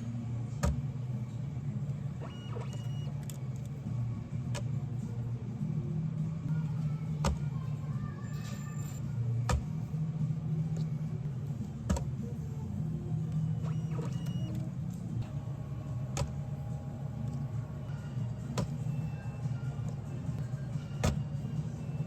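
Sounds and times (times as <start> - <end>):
low machine hum: 0.0 - 22.0.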